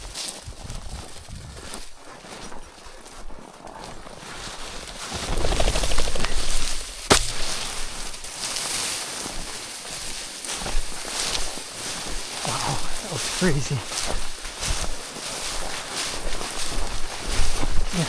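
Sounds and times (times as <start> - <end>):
rustling and rapid fluttering: 0.0 - 2.0, 3.8 - 18.0
shotgun shot: 7.1 - 7.7.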